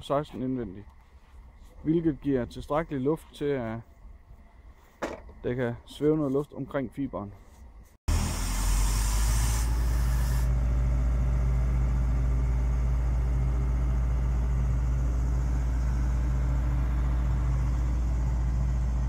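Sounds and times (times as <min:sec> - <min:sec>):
high hiss: 0:08.1 - 0:10.5
machinery engine droning: 0:08.1 - 0:19.0.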